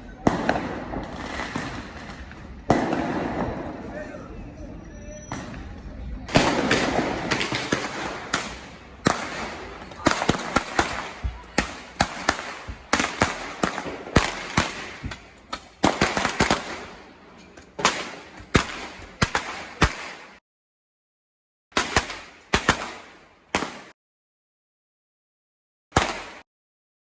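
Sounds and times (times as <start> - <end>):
fireworks banging: 0.0 - 20.4.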